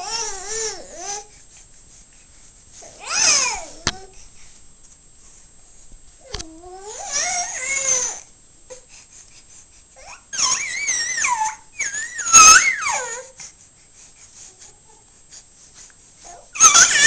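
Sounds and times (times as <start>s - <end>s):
dog whining: 3.0s - 3.8s, 10.1s - 13.3s, 16.3s - 17.0s.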